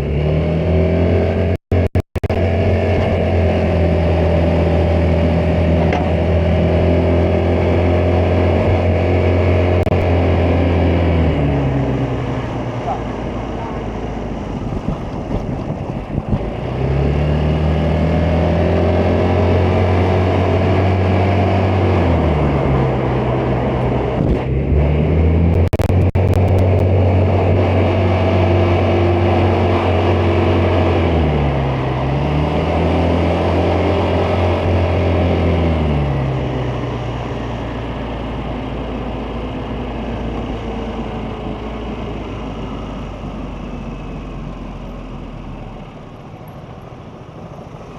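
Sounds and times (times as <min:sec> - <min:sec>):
sharp clicks: 0:25.5 - 0:26.9.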